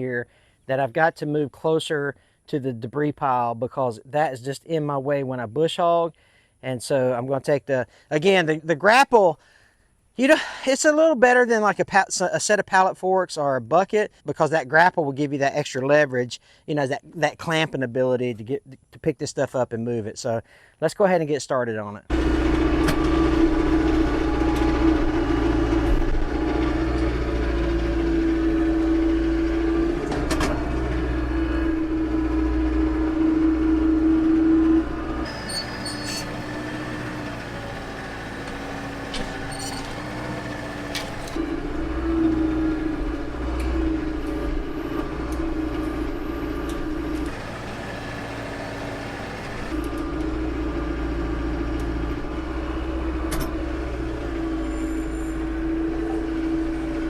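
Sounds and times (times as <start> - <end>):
tractor diesel engine running: 22.1 - 57.0.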